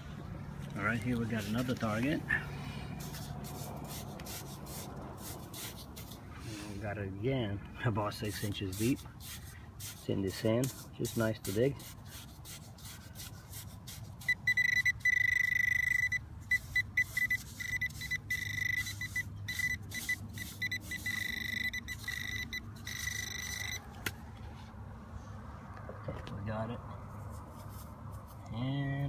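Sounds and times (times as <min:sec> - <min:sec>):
digging in sand: 0:00.7 - 0:07.0, 0:07.8 - 0:24.5
metal detector tone and beeps: 0:14.2 - 0:23.9.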